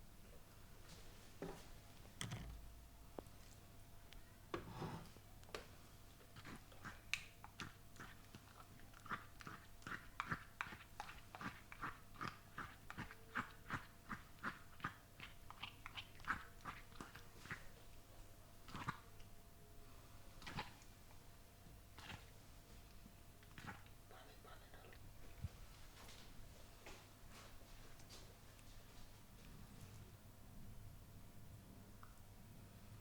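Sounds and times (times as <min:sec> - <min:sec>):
wet clicks and smacks of hands: 0:07.1 - 0:07.8.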